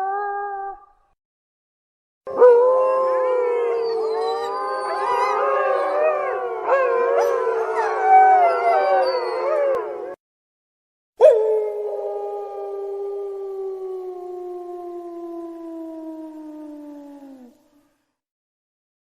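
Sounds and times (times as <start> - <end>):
wolves howling in chorus: 2.3 - 10.2.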